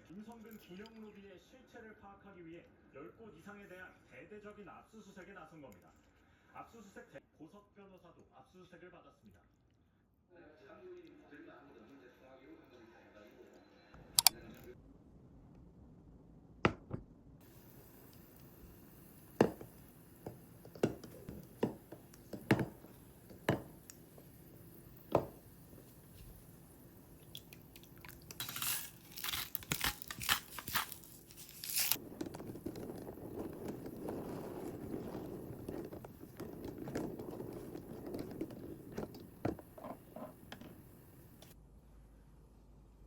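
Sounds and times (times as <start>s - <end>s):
crinkling and tearing: 27.3s - 39.3s.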